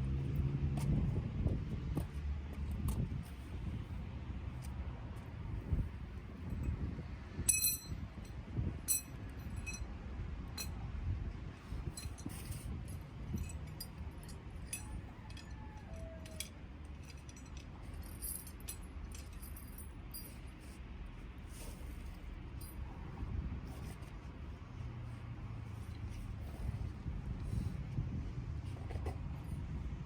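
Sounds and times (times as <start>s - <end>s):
low steady rumble: 0.0s - 30.0s
metallic clinks: 7.4s - 9.9s, 12.0s - 20.5s.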